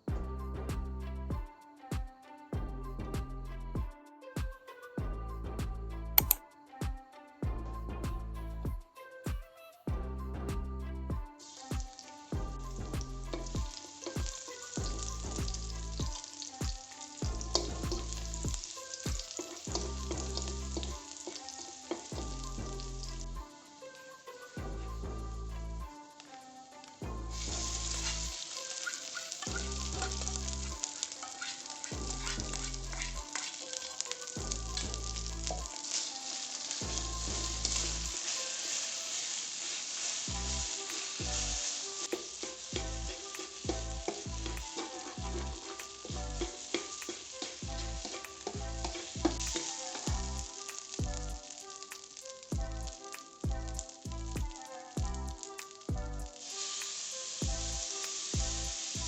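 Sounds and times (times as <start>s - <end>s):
backing track with bass beat: 0.0s - 21.0s, 22.1s - 23.4s, 24.6s - 25.9s, 27.0s - 28.4s, 29.4s - 30.8s, 31.9s - 33.3s, 34.4s - 35.7s, 36.8s - 38.2s, 40.3s - 41.7s, 42.7s - 46.6s, 47.6s - 51.4s, 52.5s - 56.4s, 57.4s - 59.0s
rice sizzling in a hot pan: 11.4s - 24.8s, 25.7s - 59.0s.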